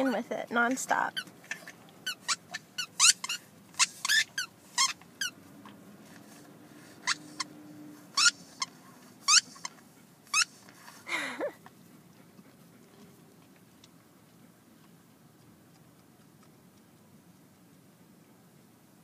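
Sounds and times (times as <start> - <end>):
squeaky toy ball squeaking: 0.0 - 0.3, 1.1 - 5.4, 7.0 - 7.5, 8.1 - 10.5.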